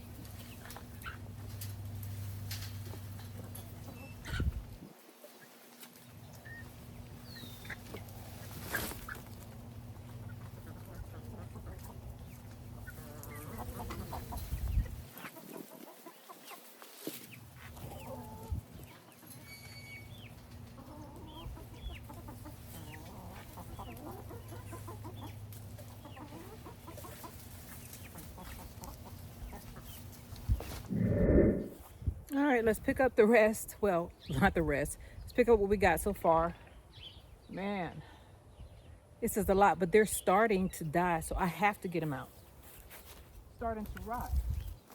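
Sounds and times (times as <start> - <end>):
chickens clucking: 0.0 - 31.8
low rumble: 30.8 - 32.2.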